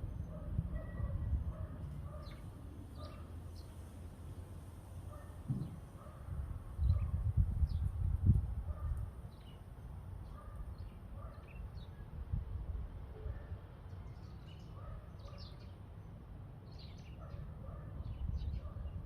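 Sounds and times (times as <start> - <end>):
wind gusting across microphone: 0.0 - 2.9, 5.4 - 9.5, 12.0 - 13.1
small birds chirping: 0.0 - 3.9, 8.7 - 12.1, 13.8 - 19.0.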